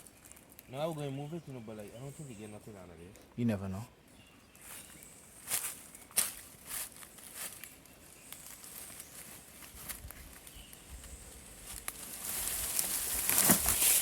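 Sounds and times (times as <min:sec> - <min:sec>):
dry leaves rustling and crunching: 0:04.7 - 0:14.0.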